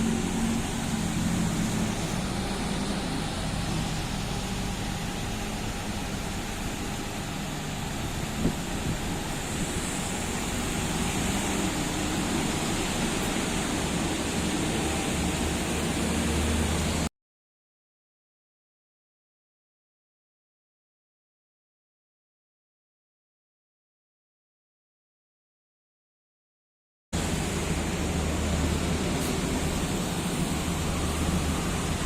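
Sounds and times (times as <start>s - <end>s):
machine hum with hiss: 0.0s - 17.1s, 27.2s - 32.0s.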